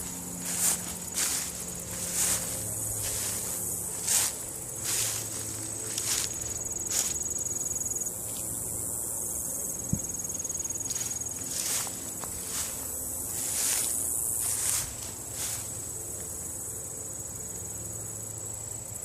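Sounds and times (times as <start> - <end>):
footsteps crunching dry leaves: 0.0 - 8.6, 10.6 - 16.2
insects trilling: 0.0 - 19.0.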